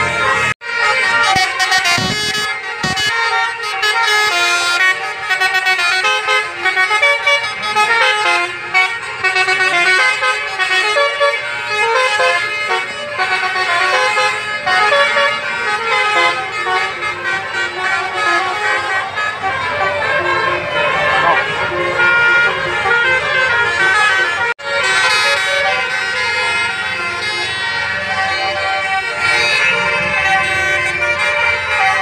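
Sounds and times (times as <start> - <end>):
musical bus horn melody: 0.0 - 32.0.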